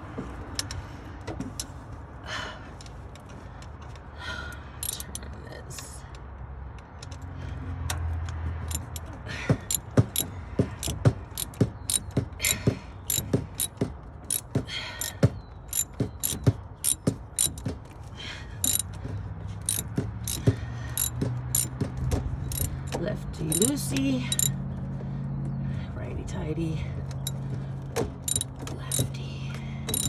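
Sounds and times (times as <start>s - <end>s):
socket ratchet clicking: 4.8s - 5.2s, 8.3s - 18.0s, 18.6s - 19.0s, 19.6s - 24.6s, 27.1s - 29.2s, 29.8s - 30.0s.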